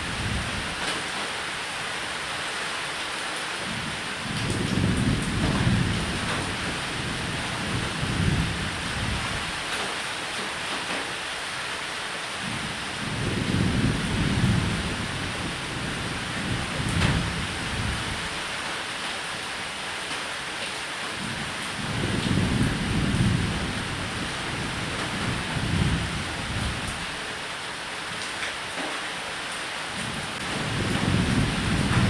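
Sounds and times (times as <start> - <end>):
rain hissing: 0.0 - 32.0
thunder rumbling: 4.3 - 9.4, 12.5 - 18.4, 21.8 - 27.0, 30.4 - 32.0.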